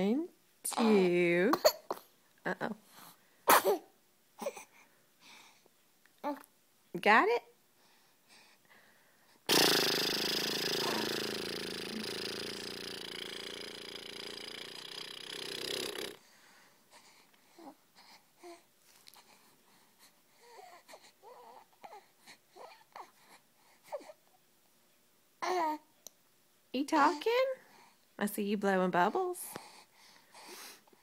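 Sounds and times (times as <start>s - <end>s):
baby cooing and babbling: 6.2s - 6.5s, 10.2s - 13.5s, 20.4s - 23.2s, 25.4s - 25.9s
loud wheezy hissing: 9.5s - 16.2s.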